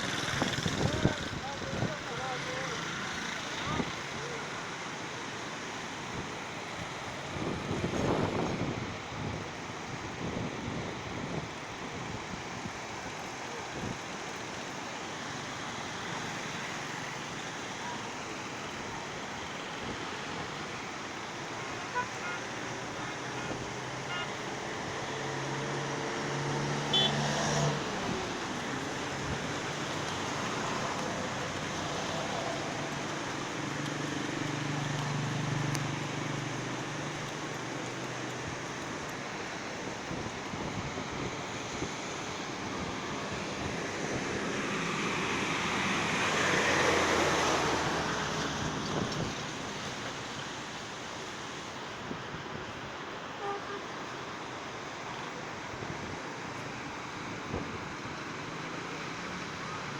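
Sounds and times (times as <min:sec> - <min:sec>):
motor vehicles passing: 0:00.0 - 0:04.6, 0:22.3 - 0:50.4
river rushing in flood: 0:00.0 - 0:59.9.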